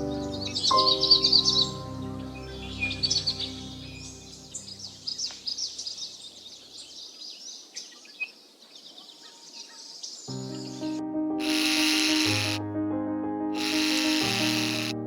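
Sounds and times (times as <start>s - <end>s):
background music: 0.0s - 5.1s, 10.4s - 15.0s
birds chirping and trilling: 0.0s - 12.6s.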